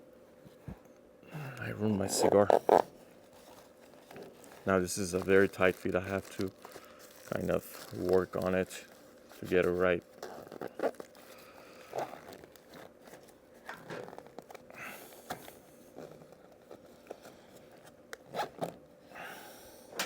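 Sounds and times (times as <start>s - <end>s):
material rustling: 2.0s - 14.8s
packaging crinkling: 2.0s - 18.8s.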